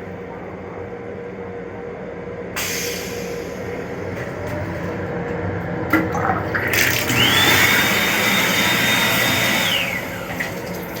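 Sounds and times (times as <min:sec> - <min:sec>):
train running noise: 0:00.0 - 0:06.6
toilet flushing with high whine: 0:02.6 - 0:11.0
toilet flush click: 0:05.9 - 0:11.0.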